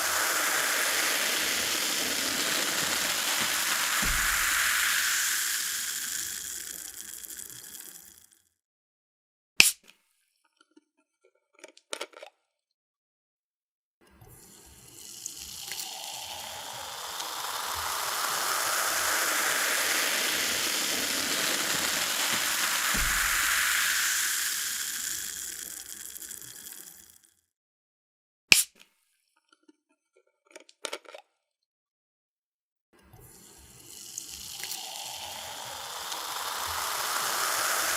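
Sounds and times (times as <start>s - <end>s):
cola being poured: 0.0s - 8.3s, 14.4s - 27.2s, 33.2s - 37.9s.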